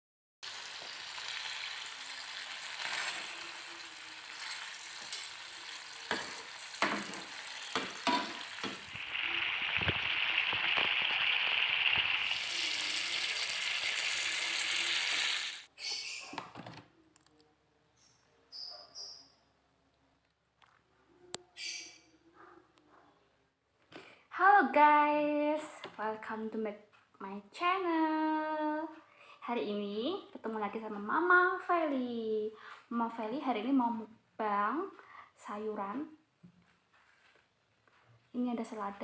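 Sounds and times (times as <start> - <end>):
sizzling hiss with crackles: 0.4 - 15.7.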